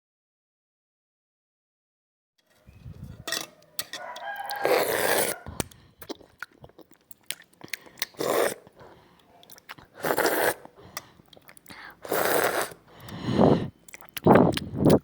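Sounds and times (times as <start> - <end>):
slurping noodles: 4.1 - 15.0.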